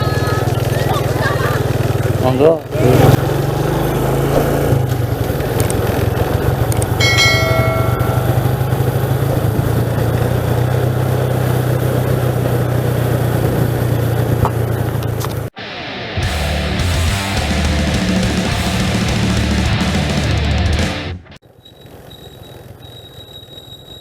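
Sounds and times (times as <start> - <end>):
small motorcycle engine running: 0.0 - 15.5
brief ringing tone: 7.0 - 9.2.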